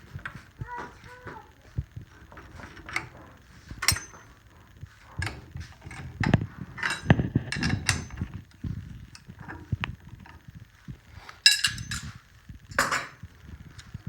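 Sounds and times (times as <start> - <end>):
metallic clicks and clinks: 11.4 - 13.2.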